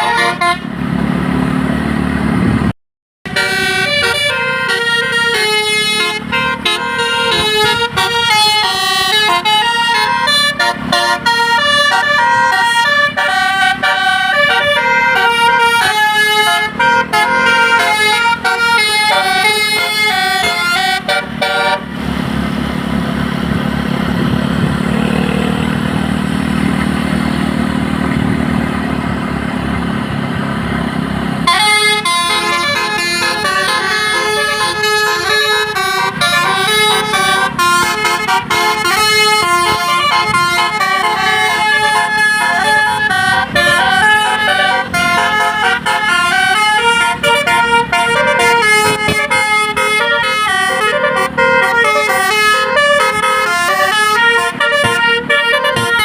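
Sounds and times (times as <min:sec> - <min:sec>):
musical air horn melody: 0:00.0 - 0:00.7, 0:03.3 - 0:21.9, 0:31.4 - 0:56.0
bus engine: 0:00.0 - 0:56.0
road rumble: 0:00.0 - 0:56.0.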